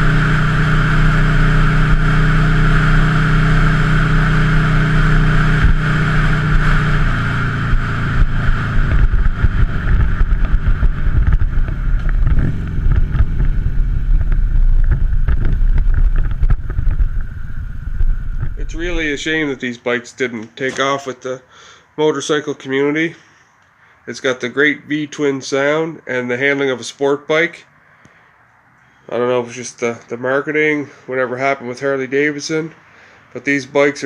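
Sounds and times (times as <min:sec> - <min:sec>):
motorcycle engine running: 0:00.0 - 0:19.6.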